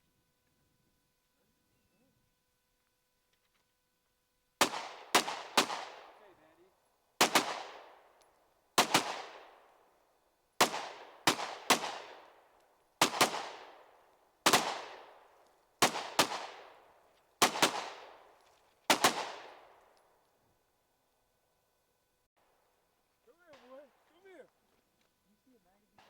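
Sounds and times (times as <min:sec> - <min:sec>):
gunshots with echo: 0:04.6 - 0:06.4, 0:07.2 - 0:08.1, 0:08.8 - 0:09.6, 0:10.6 - 0:12.4, 0:13.0 - 0:15.2, 0:15.8 - 0:16.8, 0:17.4 - 0:18.3, 0:18.9 - 0:19.7.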